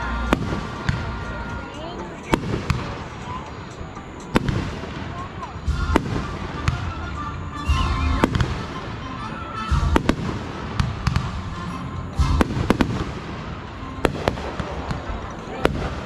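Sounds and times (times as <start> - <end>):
firework cracks: 4.3 - 16.0
firework booms: 4.4 - 9.1, 9.7 - 16.0.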